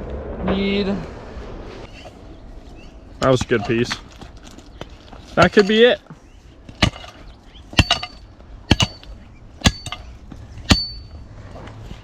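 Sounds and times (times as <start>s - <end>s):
steel tool striking rock: 3.2s - 4.2s, 5.4s - 5.9s, 6.7s - 11.2s.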